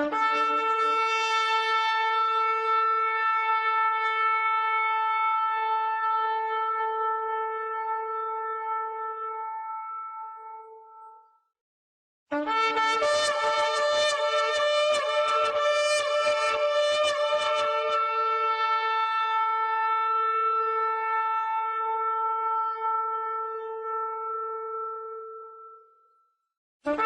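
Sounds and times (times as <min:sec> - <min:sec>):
shofar blast: 0:00.0 - 0:05.8.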